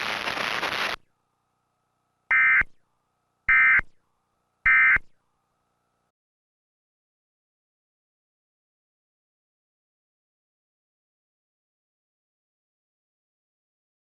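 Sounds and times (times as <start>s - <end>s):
loud hissing noise: 0.0s - 1.0s.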